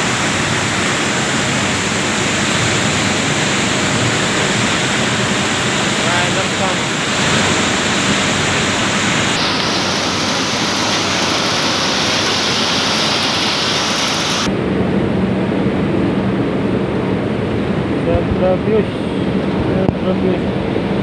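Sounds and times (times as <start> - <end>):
mill machinery running: 0.0 - 14.5
high hiss: 1.4 - 14.5.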